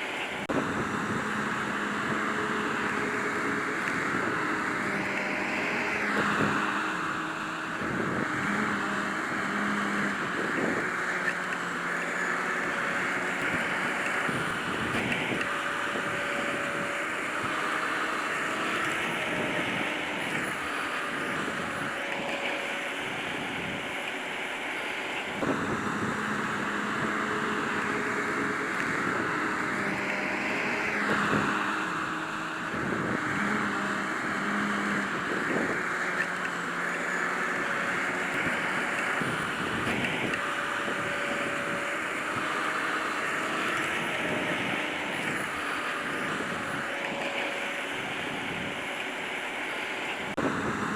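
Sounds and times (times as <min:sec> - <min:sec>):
potato harvester droning: 0:00.0 - 0:50.9.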